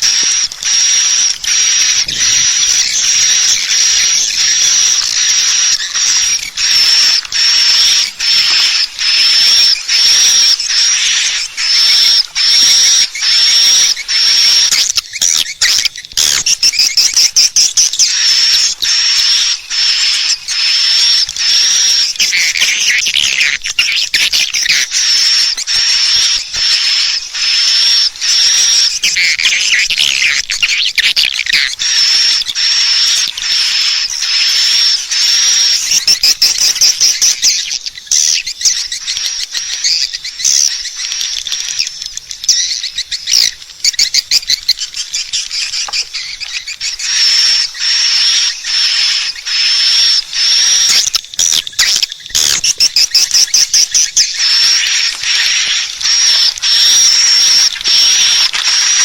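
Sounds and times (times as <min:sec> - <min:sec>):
high chirping twitters: 0:00.0 - 0:59.0.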